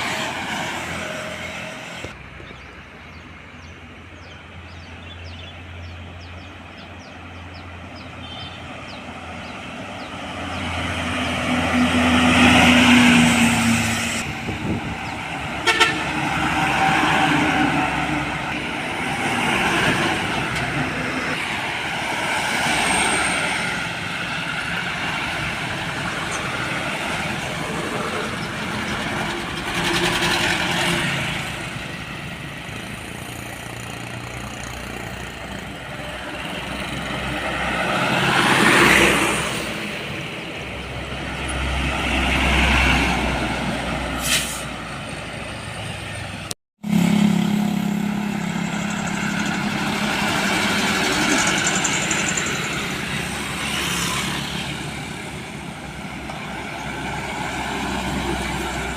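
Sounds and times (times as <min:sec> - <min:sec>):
heavy trucks passing: 0:00.0 - 0:58.9
truck engine humming: 0:43.1 - 0:53.7
air-brake hiss: 0:44.2 - 0:44.8.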